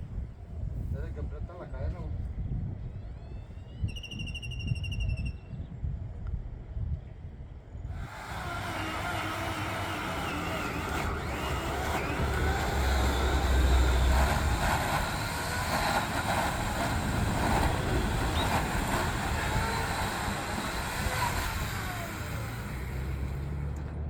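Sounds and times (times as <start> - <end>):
engine humming: 7.8 - 24.0.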